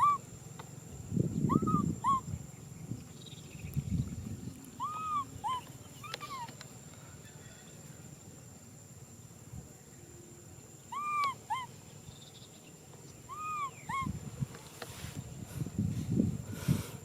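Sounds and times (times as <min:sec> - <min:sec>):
baby monkey crying: 0:00.0 - 0:00.2, 0:01.5 - 0:02.2, 0:04.8 - 0:06.5, 0:10.9 - 0:11.7, 0:13.3 - 0:14.1.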